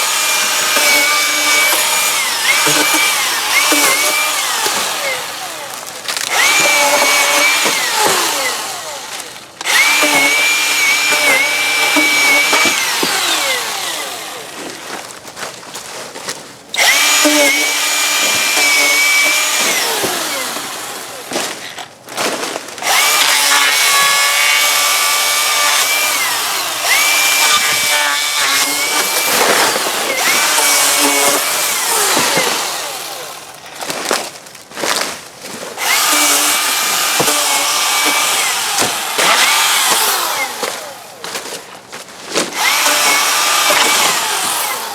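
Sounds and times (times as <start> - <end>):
electric chainsaw whine: 0.0 - 15.0, 16.7 - 21.9, 22.8 - 33.8, 35.8 - 41.6, 42.4 - 44.9.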